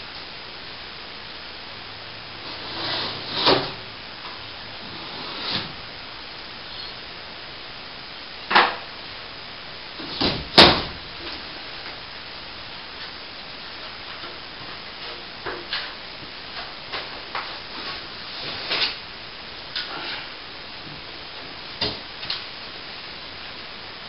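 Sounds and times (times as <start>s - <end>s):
plasterboard crashing down: 10.0s - 11.0s.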